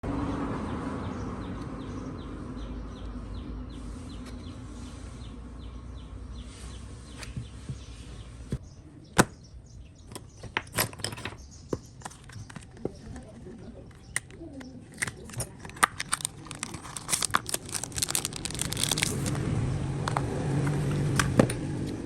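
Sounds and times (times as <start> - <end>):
tools clicking and tapping: 13.9 - 16.8.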